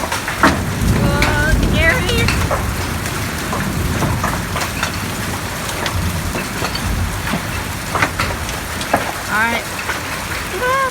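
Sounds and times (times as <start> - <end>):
hailstones pelting down: 0.0 - 10.9.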